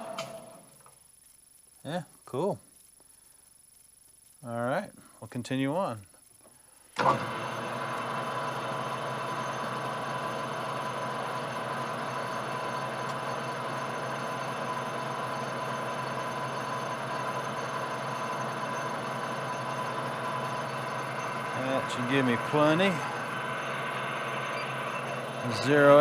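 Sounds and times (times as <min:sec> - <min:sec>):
metal lathe whining: 0:07.0 - 0:26.0.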